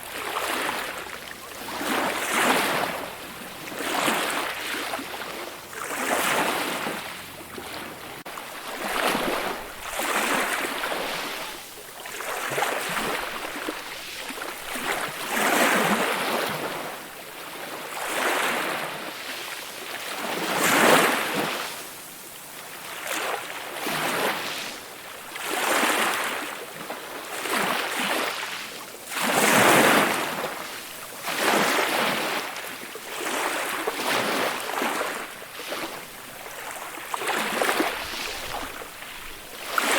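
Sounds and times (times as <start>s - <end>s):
ocean waves washing in: 29.2s - 39.9s.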